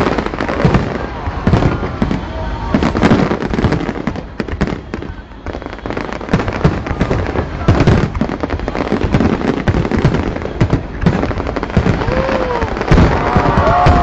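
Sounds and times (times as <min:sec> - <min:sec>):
deep firework booms: 0:00.0 - 0:14.0
fireworks bangs and crackling: 0:00.0 - 0:14.0.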